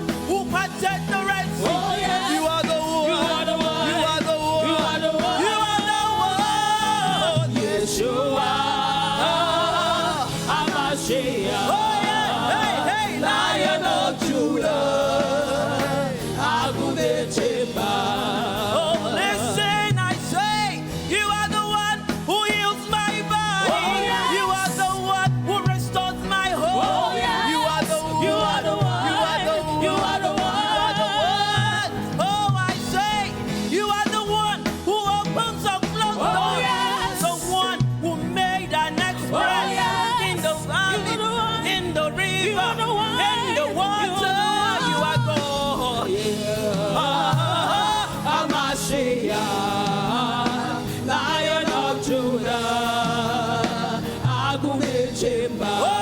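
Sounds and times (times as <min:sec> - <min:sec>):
gospel singing over a band: 0:00.0 - 0:56.0.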